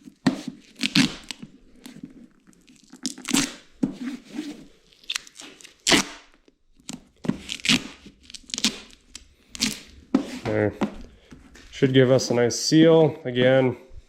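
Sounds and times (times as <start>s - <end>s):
duct tape ripping: 0.4s - 10.0s.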